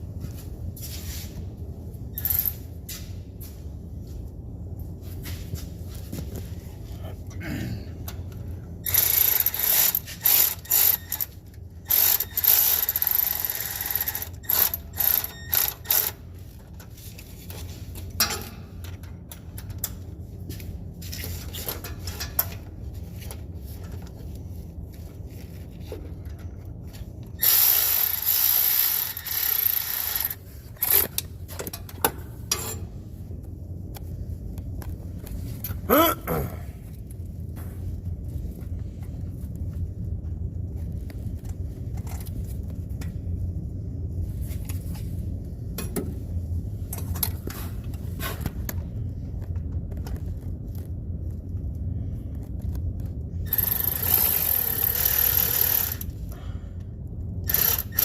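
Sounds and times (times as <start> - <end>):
low steady hum: 0.0 - 58.0
socket ratchet clicking: 53.5 - 56.1, 57.5 - 58.0.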